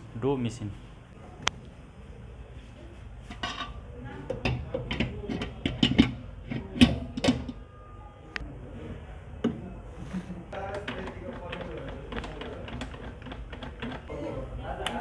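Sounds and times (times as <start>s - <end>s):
metal utensils clattering: 3.3s - 7.6s.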